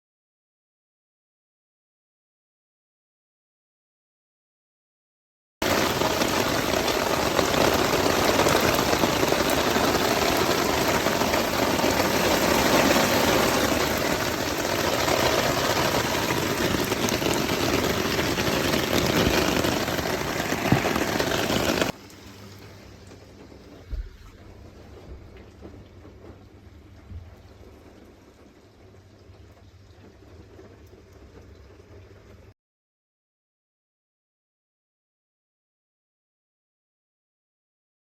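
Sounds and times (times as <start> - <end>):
heavy rain rushing: 5.6 - 29.0.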